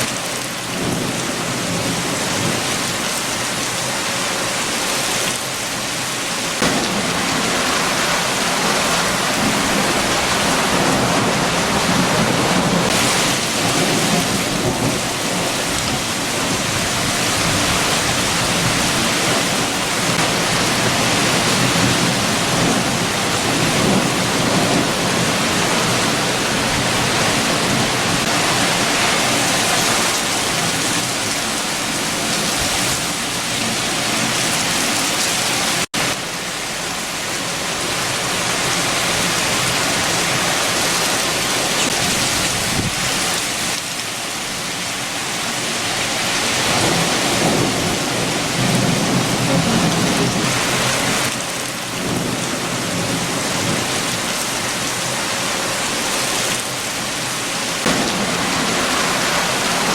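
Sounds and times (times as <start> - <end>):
heavy rain falling: 0.0 - 59.9
strong wind: 0.0 - 59.9.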